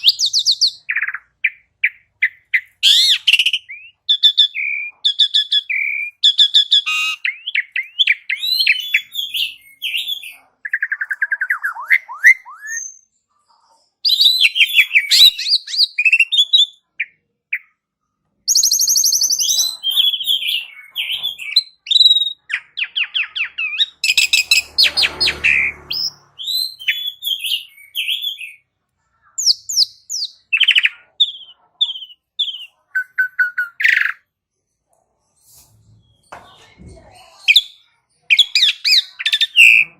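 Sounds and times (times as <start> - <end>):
starling singing: 0.0 - 13.1, 14.1 - 17.8, 18.5 - 28.7, 29.3 - 34.3, 37.4 - 39.9.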